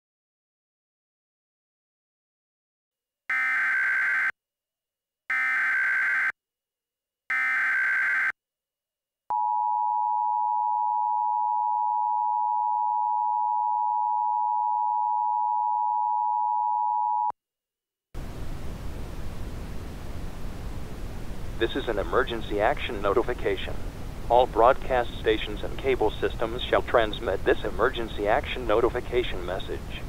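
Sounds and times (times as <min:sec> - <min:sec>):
static hiss: 0:18.2 - 0:30.0.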